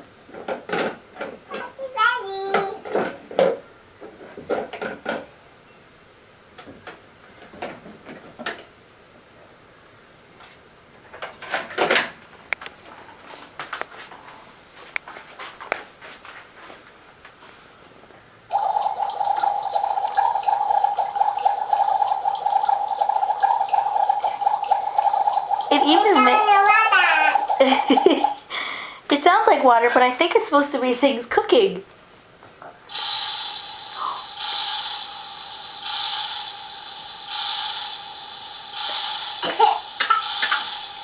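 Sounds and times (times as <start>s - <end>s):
electronic bubbling sound effect: 18.5s - 28.4s.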